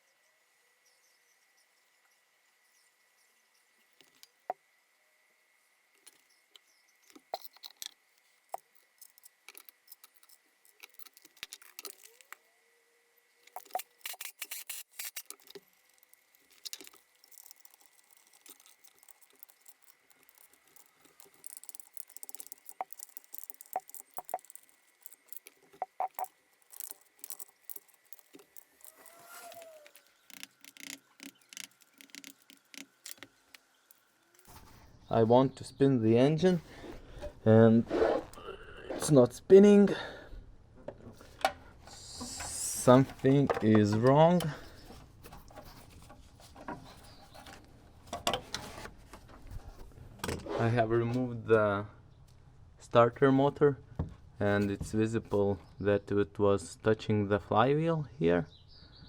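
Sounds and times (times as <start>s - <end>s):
metallic clicks of hand tools: 13.5s - 33.6s.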